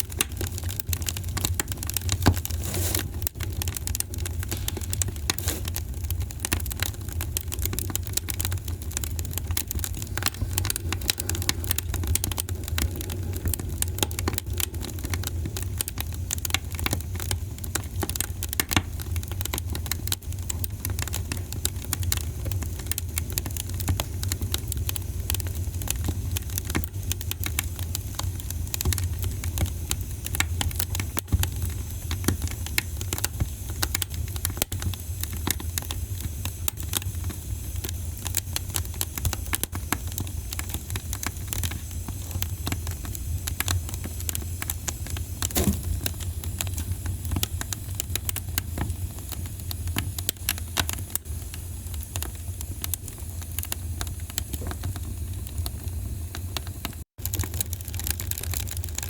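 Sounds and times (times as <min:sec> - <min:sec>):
wood fire crackling and popping: 0:00.0 - 0:59.0
steady low rumble: 0:08.2 - 0:16.9.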